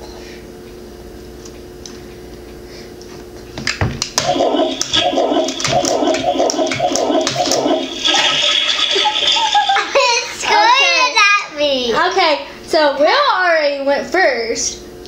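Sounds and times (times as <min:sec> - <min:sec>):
electronic toilet flush: 0:04.2 - 0:10.1.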